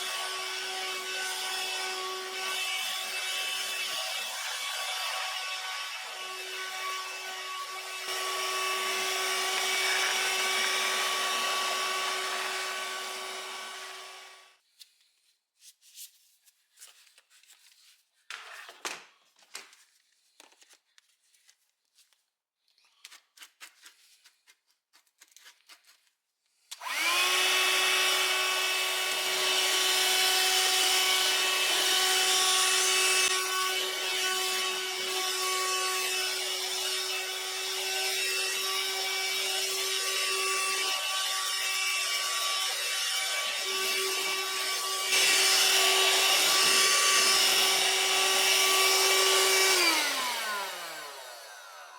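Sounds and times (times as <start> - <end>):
hand-held vacuum cleaner whining: 0.0 - 14.6, 26.7 - 51.9.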